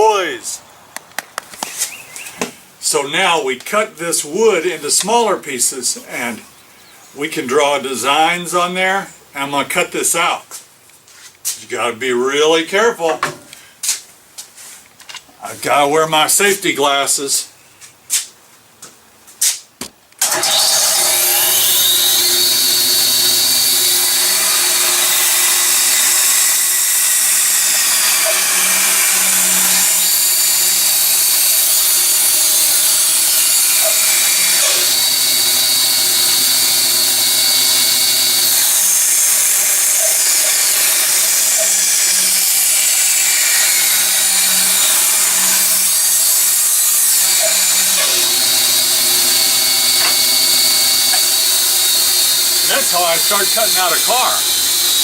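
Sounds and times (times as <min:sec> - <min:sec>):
electric saw cutting wood: 0:20.2 - 0:55.0.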